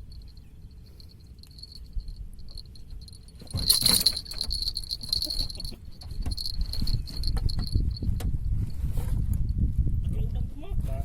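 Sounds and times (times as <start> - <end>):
low rumble of handling: 0.0 - 11.0
rattling clicks: 2.5 - 7.8.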